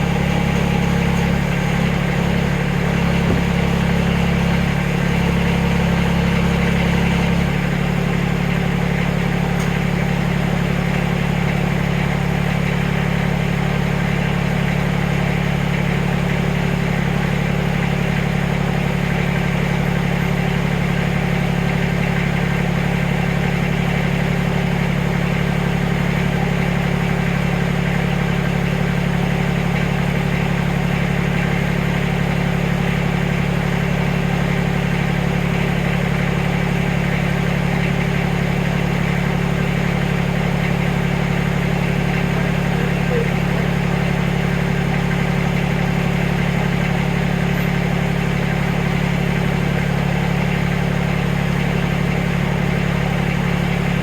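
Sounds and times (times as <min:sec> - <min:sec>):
backhoe engine running: 0:00.0 - 0:54.0.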